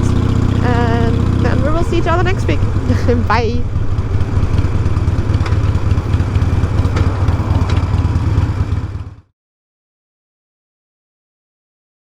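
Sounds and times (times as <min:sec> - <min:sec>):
motorcycle engine running: 0:00.0 - 0:09.3.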